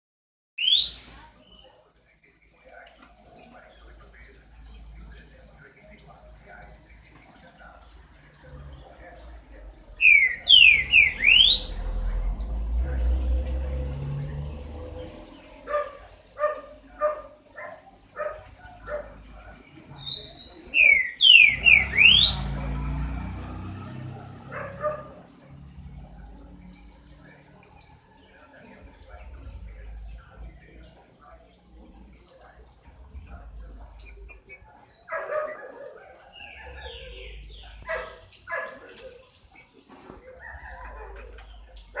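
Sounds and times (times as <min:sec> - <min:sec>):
whistled bird calls: 0:00.6 - 0:01.7, 0:09.9 - 0:11.9, 0:20.0 - 0:22.6
chickens calling: 0:06.3 - 0:42.0
dog barking: 0:15.6 - 0:19.3, 0:24.2 - 0:25.4, 0:34.9 - 0:39.4, 0:40.0 - 0:42.0.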